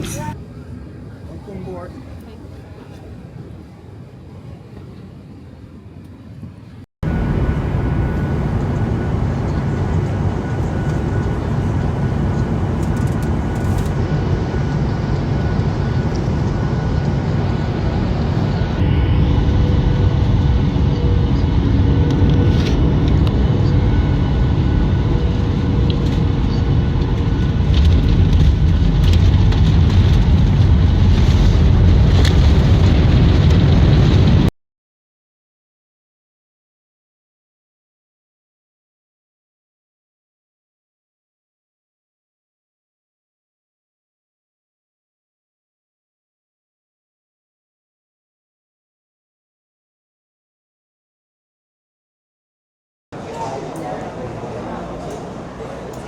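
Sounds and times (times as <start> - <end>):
jet engine rumble in cabin: 0.0 - 34.5.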